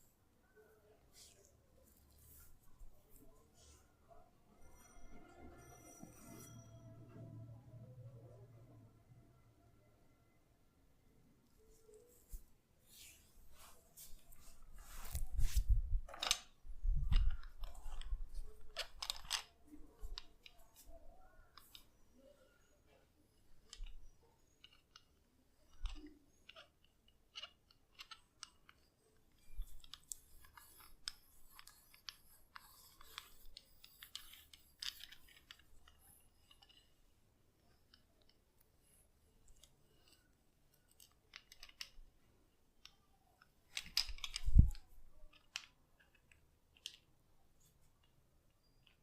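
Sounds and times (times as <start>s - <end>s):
hands rustling over hair: 12.1s - 15.7s.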